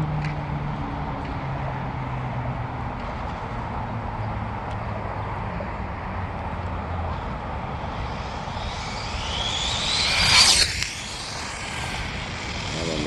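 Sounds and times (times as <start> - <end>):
electric motor whine: 7.6 - 13.0.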